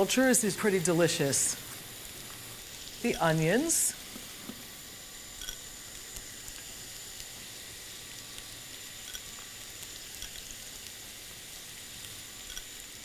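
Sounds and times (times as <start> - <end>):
onion sizzling in oil: 0.0 - 13.0.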